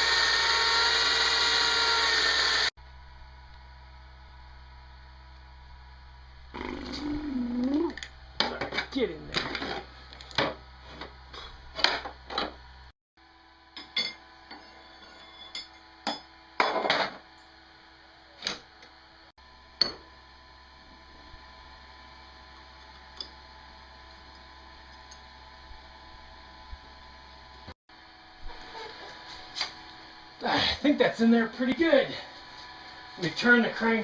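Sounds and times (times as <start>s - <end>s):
faint hum: 2.8s - 16.6s.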